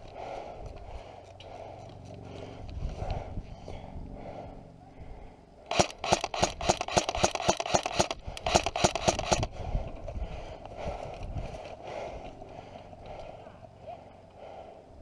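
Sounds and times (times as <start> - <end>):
airsoft gun rapid shots: 5.7 - 9.5.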